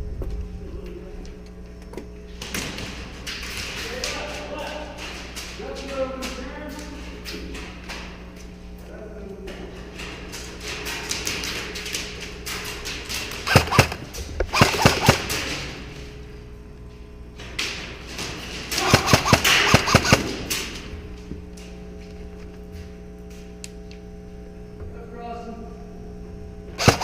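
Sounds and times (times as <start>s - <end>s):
low hum: 0.0s - 27.0s
airsoft gunfire cracks: 13.5s - 15.6s, 18.7s - 20.7s, 26.8s - 27.0s.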